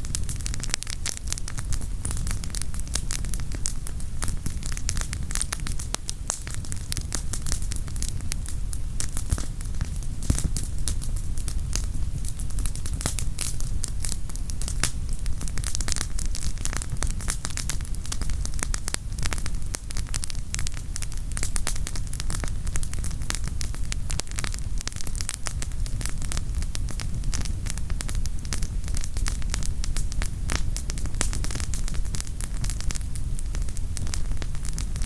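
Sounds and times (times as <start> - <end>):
campfire crackling and popping: 0.0 - 35.0
low fire rumble: 0.0 - 35.0.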